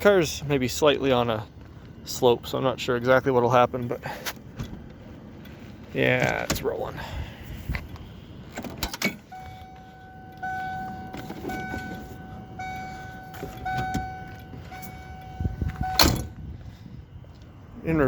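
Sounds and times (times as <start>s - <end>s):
car electronic warning tone: 9.1s - 16.4s.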